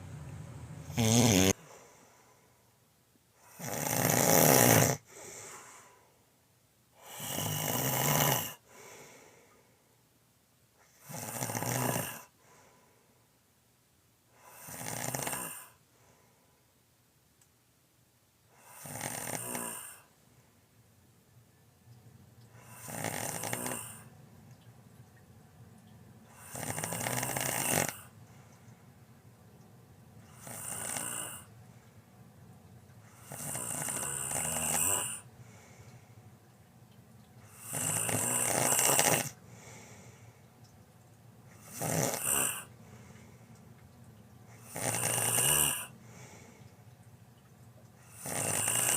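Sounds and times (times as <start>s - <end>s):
person snoring loudly: 0.9s - 1.6s, 3.4s - 5.0s, 7.0s - 8.6s, 11.0s - 12.3s, 14.5s - 15.8s, 18.6s - 20.1s, 22.6s - 24.1s, 26.4s - 28.1s, 30.3s - 31.5s, 33.1s - 35.3s, 37.5s - 39.4s, 41.6s - 42.7s, 44.6s - 45.9s, 48.1s - 48.9s.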